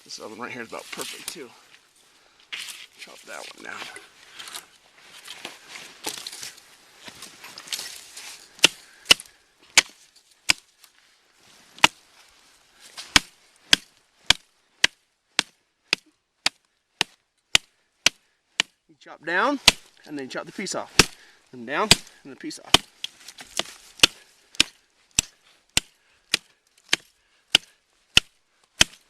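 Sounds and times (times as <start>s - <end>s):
rustling: 0.5s - 14.2s, 22.8s - 25.2s
hatchet chopping tree: 8.6s - 10.7s, 11.8s - 12.0s, 13.0s - 18.8s, 19.5s - 20.0s, 20.8s - 29.0s.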